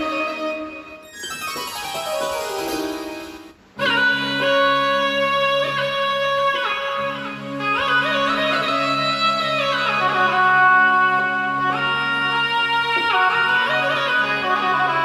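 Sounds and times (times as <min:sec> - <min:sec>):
synthesizer notes with pitch bends: 0:01.0 - 0:04.3.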